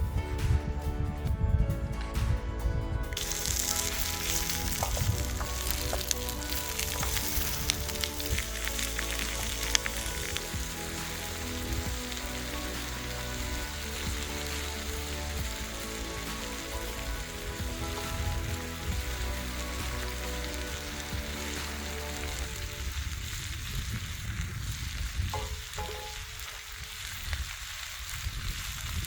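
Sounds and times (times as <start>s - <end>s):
food sizzling in oil: 3.2s - 29.0s
oil popping: 3.2s - 29.0s.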